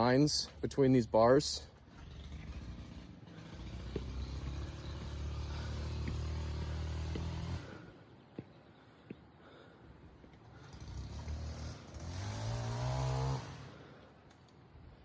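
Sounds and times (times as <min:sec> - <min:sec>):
vehicle engine humming: 0:00.0 - 0:15.0
faint clicks: 0:14.0 - 0:14.6.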